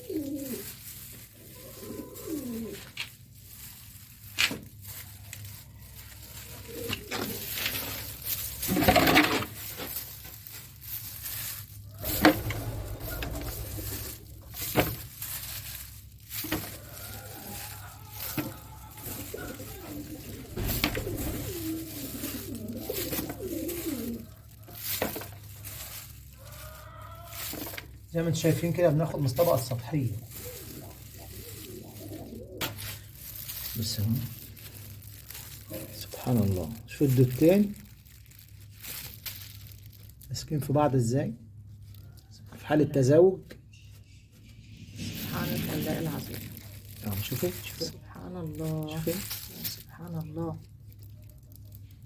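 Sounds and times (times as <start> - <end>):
pigeons cooing: 0.0 - 3.8, 4.8 - 9.9, 10.8 - 33.6
rustle: 0.0 - 40.3, 44.0 - 52.0.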